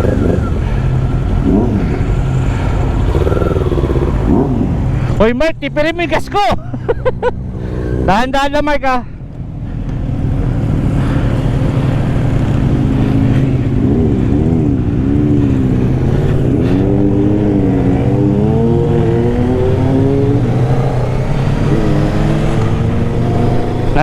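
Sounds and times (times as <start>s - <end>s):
motorcycle engine running: 0.0s - 5.0s.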